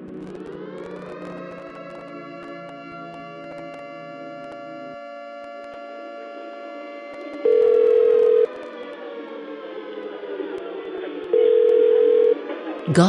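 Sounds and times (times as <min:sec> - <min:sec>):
telephone ringback tone: 0:07.4 - 0:08.6, 0:11.3 - 0:12.5.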